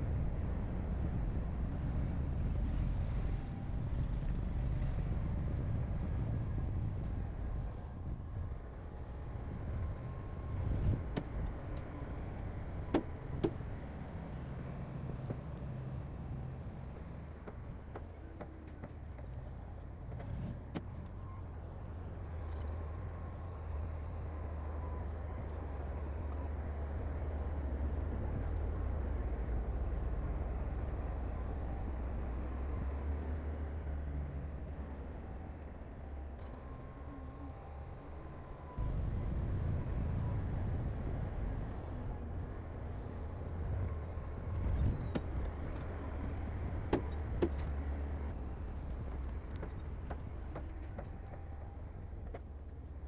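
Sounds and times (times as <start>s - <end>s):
heavy diesel machinery rumbling: 25.6s - 53.0s.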